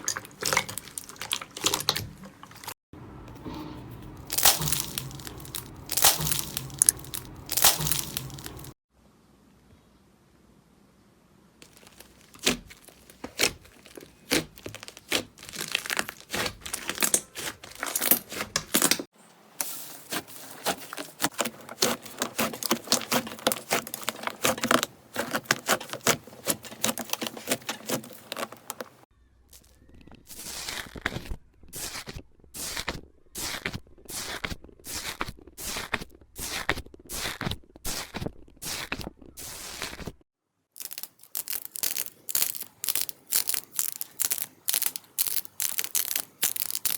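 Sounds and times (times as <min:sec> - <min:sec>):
slime squeezed by hand: 0:04.2 - 0:08.8, 0:11.6 - 0:18.5, 0:29.5 - 0:40.2, 0:40.8 - 0:46.9.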